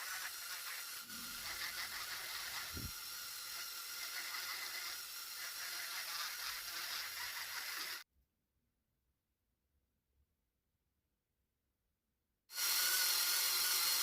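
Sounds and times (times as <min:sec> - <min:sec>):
rotary tool grinding wood: 0:00.0 - 0:08.0, 0:12.5 - 0:14.0.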